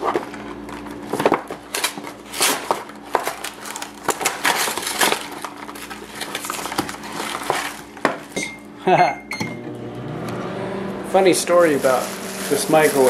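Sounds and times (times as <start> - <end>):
plastic packaging crinkling: 0.0 - 8.4, 11.3 - 13.0
faint appliance hum: 0.0 - 13.0.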